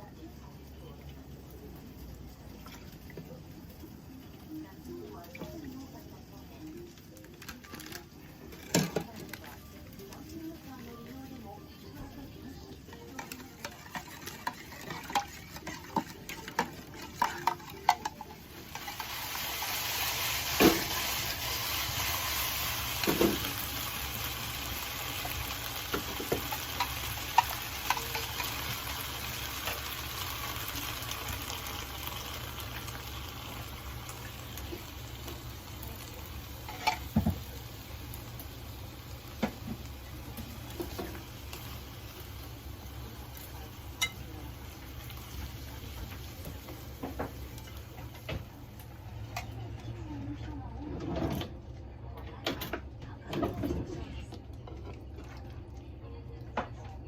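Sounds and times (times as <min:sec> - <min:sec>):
food sizzling in a pan: 0:00.0 - 0:49.8.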